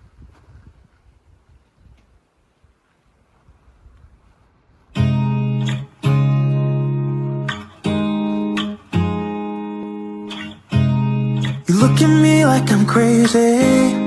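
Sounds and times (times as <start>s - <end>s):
acoustic guitar strumming chords: 5.0s - 14.0s.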